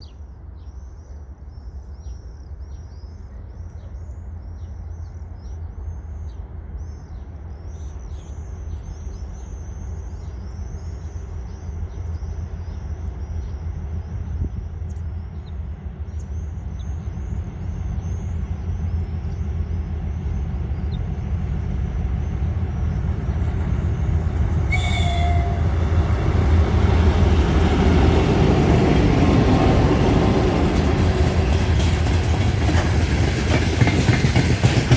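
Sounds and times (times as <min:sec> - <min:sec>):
locomotive engine rumble: 0:12.9 - 0:34.9
swifts screaming: 0:21.6 - 0:30.0
locomotive horn toot: 0:24.4 - 0:26.5.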